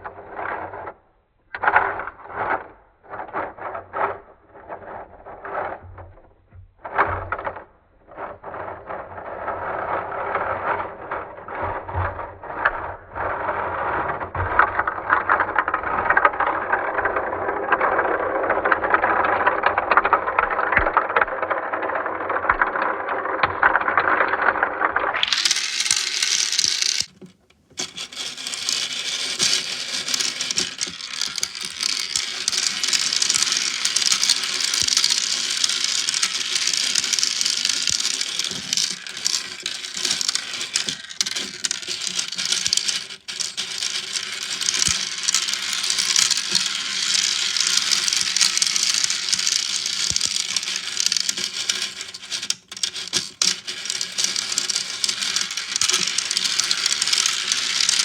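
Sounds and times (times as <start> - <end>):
small balls rattling through marble run: 14.0 - 58.0.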